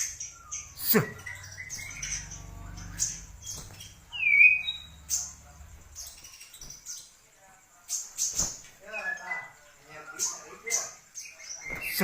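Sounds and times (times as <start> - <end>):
down-slurred bird whistle: 0.0 - 5.3
steady low hum: 0.0 - 6.5
bird calling with high notes: 0.0 - 7.0.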